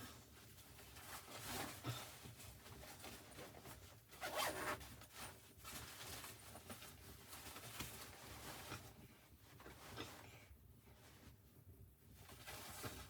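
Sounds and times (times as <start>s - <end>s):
zipper being pulled: 4.2s - 4.8s.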